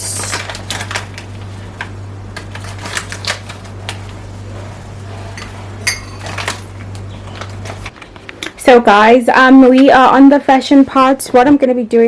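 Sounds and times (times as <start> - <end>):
steady low hum: 0.7 - 7.9
teaspoon clinking against mug: 5.4 - 6.5.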